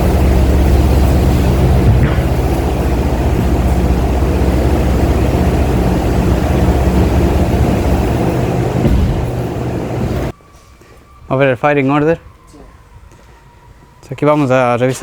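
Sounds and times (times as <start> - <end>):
pickup engine humming: 0.0 - 10.3
road noise: 0.0 - 11.8.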